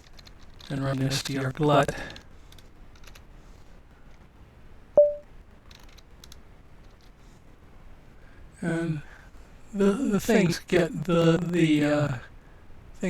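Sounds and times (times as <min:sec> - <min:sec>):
computer mouse and key clicks: 0:00.0 - 0:00.7, 0:02.1 - 0:03.2, 0:05.7 - 0:07.2
sharp click with short tone: 0:05.0 - 0:05.2.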